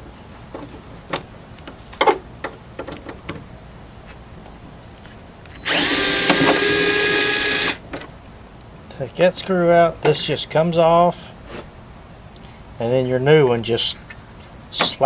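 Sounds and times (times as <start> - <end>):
power drill spinning: 5.5 - 7.8.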